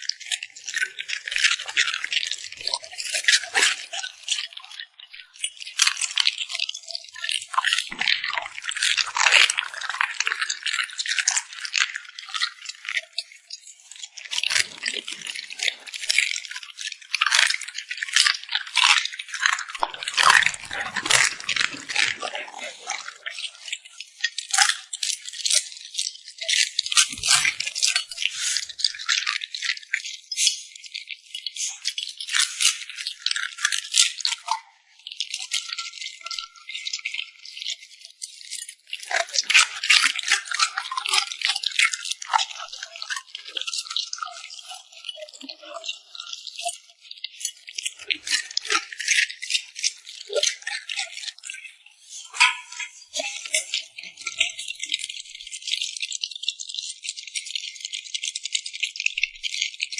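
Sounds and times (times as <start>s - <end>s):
dog chewing crunchy food: 14.4s - 23.7s, 52.4s - 54.8s.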